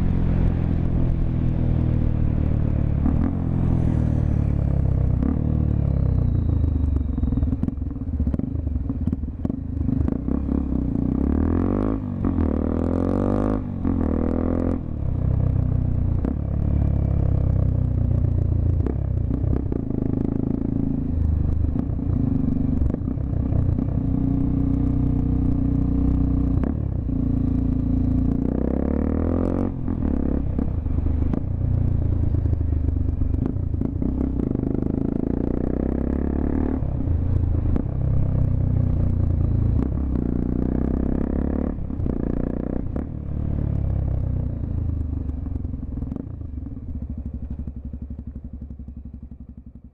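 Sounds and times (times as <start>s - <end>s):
motorcycle engine revving: 0.0s - 49.9s.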